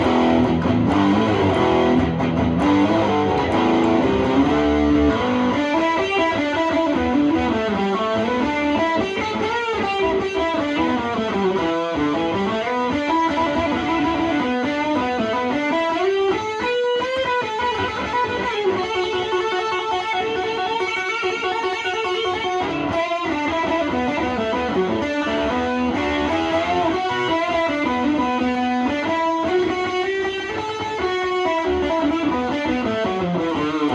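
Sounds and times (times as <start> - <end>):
electric guitar single-note runs: 0.0 - 14.2, 23.5 - 28.7.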